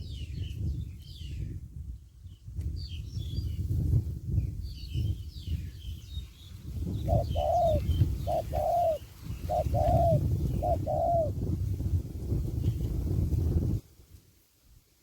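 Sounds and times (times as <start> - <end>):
small birds chirping: 4.4 - 11.3
dove cooing: 7.0 - 11.4.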